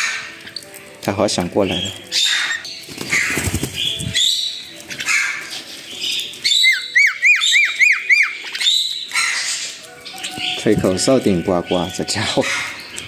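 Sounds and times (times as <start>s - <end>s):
birds squawking harshly: 0.0s - 0.7s, 1.5s - 13.0s
bird whistling notes: 1.7s - 10.6s.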